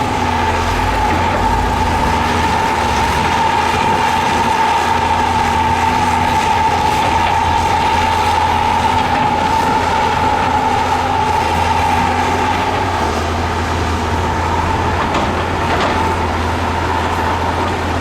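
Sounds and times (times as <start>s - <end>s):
high-pitched whine: 0.0s - 13.3s
diesel engine drone: 0.0s - 18.0s.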